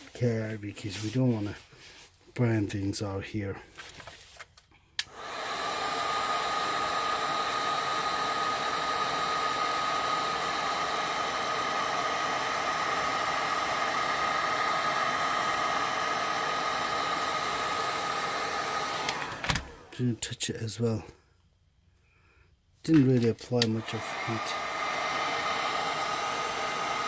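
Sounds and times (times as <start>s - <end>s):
hot-air blower rushing: 5.0s - 20.1s, 22.9s - 27.0s.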